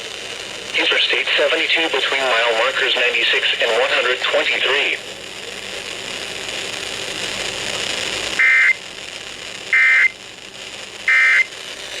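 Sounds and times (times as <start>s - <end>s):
radio hiss: 0.0s - 9.0s, 9.6s - 12.0s
digital data tone bursts: 8.4s - 8.8s, 9.8s - 10.2s, 11.1s - 11.5s.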